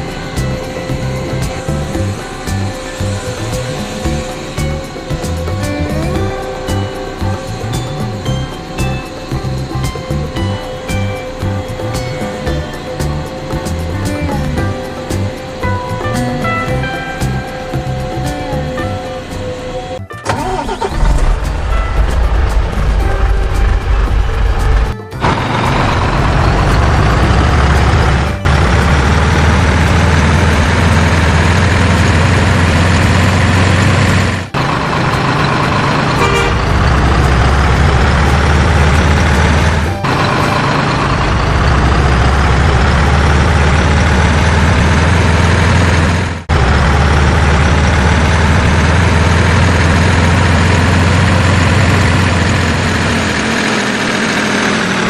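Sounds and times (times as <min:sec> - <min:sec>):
truck engine running: 0:00.0 - 0:55.0.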